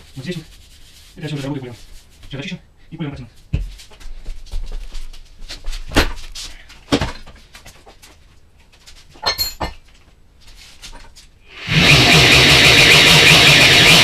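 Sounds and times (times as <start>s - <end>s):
metallic clinks of tools: 9.2s - 9.8s.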